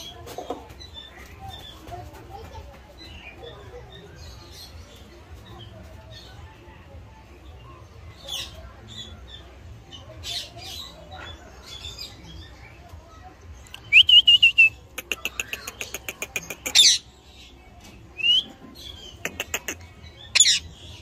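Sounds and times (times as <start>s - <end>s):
parakeet calling and squawking: 14.4s - 17.5s, 18.2s - 21.0s.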